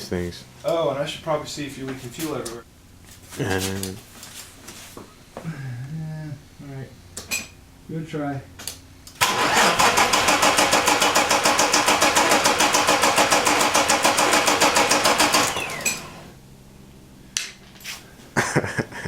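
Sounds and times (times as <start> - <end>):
starter motor cranking engine: 9.2 - 16.4
starter motor whining down: 9.2 - 16.4.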